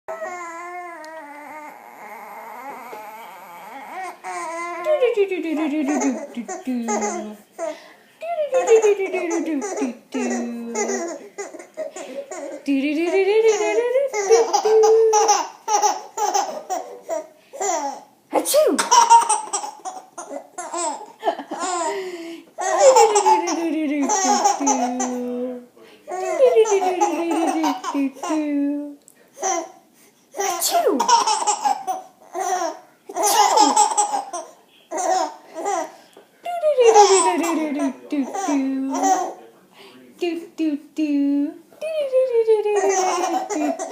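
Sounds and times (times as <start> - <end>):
baby laughing: 3.8 - 25.4, 26.1 - 28.6, 29.4 - 29.8, 30.4 - 36.0, 36.6 - 39.4, 42.6 - 43.9.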